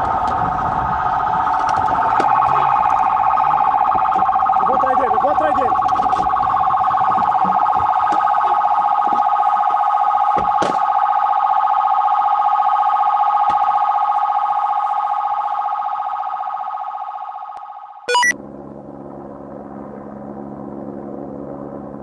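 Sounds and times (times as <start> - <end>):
police siren warbling: 0.0 - 18.4
electronic chirp: 18.1 - 18.4.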